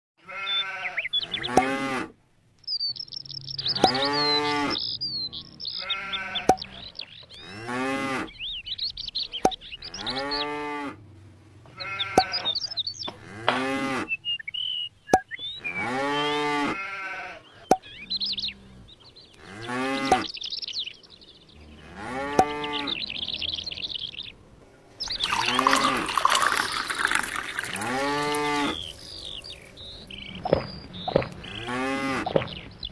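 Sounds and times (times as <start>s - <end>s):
farm animals calling: 0.2s - 2.2s, 2.9s - 32.9s
high bird chirps: 2.6s - 7.6s, 8.3s - 10.6s, 14.1s - 16.4s, 25.0s - 32.9s.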